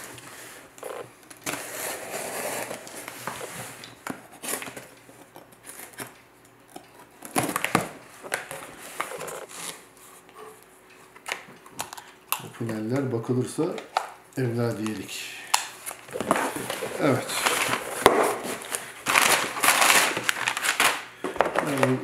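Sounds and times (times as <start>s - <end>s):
crinkling and tearing packing: 15.6s - 22.0s.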